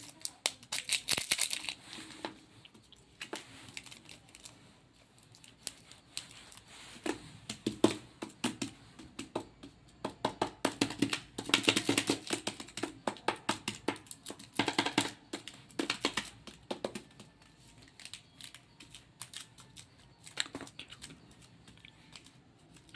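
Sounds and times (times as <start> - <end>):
candy wrapper crackling: 0.0 - 6.7, 13.7 - 22.9.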